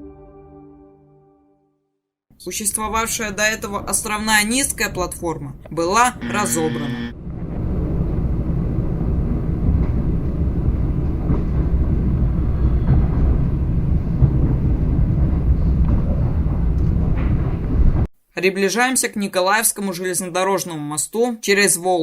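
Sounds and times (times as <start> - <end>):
train wheels rumbling on rails: 7.2 - 18.1.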